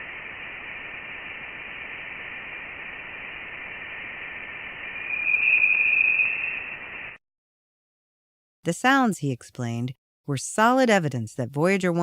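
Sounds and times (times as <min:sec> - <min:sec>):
faint high steady tones: 0:00.0 - 0:07.2
radio-like hiss: 0:00.0 - 0:07.2
loud high tone: 0:04.9 - 0:07.2.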